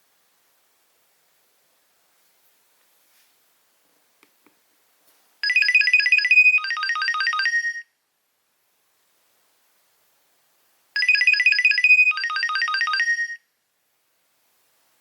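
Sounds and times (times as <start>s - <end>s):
phone ringtone beeping: 5.4s - 7.9s, 11.0s - 13.5s.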